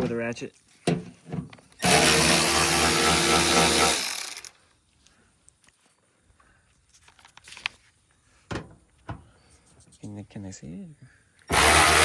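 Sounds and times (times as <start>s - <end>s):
cordless power tool motor: 1.8s - 4.5s, 11.5s - 12.0s.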